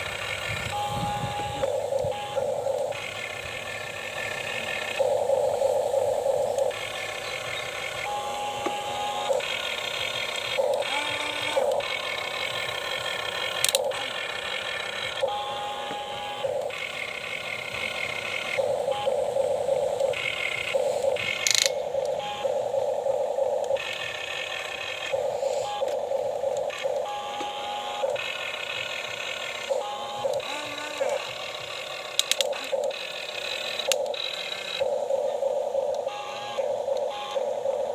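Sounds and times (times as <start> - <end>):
small electric motors whining: 0.0 - 37.9
clicks: 6.4 - 19.1, 19.9 - 22.6, 23.6 - 37.5.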